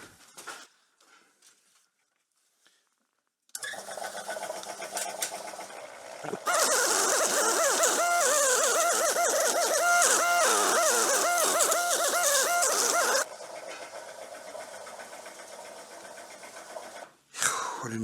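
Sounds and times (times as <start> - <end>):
air compressor running: 6.4 - 13.3.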